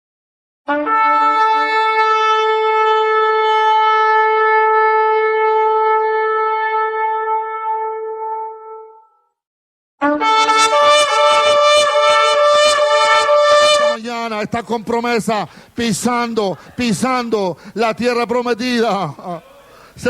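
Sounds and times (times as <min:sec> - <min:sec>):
shofar blast: 0:00.7 - 0:09.2, 0:10.0 - 0:14.0.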